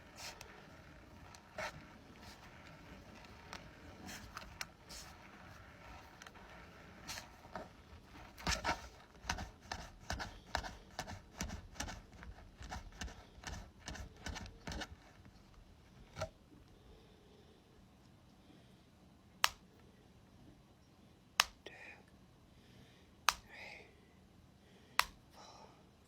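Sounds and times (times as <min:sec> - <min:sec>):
tapping and scratching on ball: 0:00.0 - 0:15.4.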